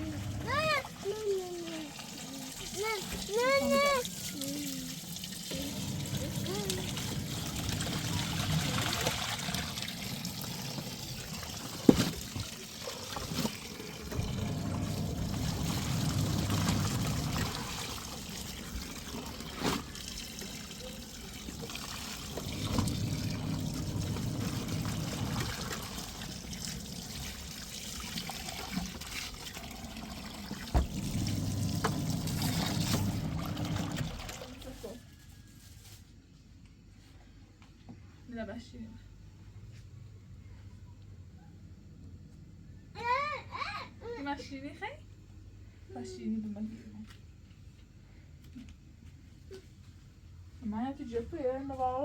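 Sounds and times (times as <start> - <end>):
washing machine motor humming: 0.0 - 34.6
water trickling and sloshing: 0.0 - 35.5.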